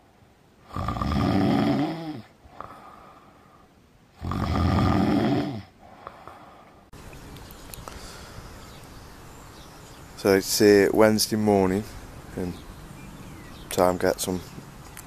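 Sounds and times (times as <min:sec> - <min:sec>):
man snoring loudly: 0:00.7 - 0:02.3, 0:04.2 - 0:05.7.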